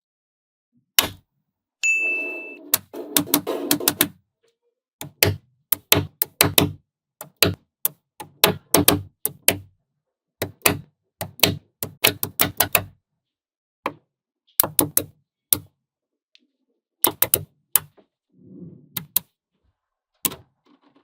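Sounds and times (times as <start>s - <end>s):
short ding: 1.8s - 2.6s.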